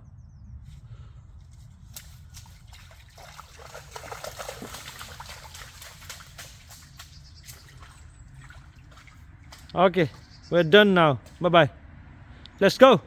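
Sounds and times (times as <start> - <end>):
rainwater splashing and trickling: 1.8 - 10.5.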